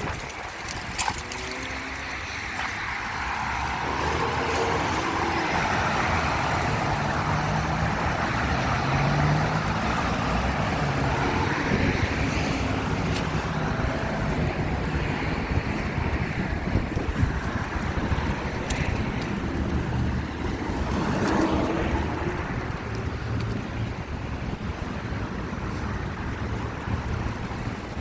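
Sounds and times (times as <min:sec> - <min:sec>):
passing street traffic hum: 0:00.0 - 0:28.0
strong wind rushing: 0:02.4 - 0:28.0.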